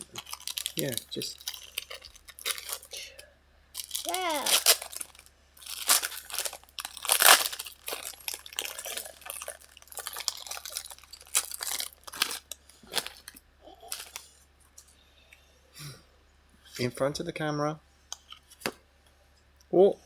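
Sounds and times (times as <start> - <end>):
foil card pack crinkling: 0.0 - 3.2, 3.8 - 14.4.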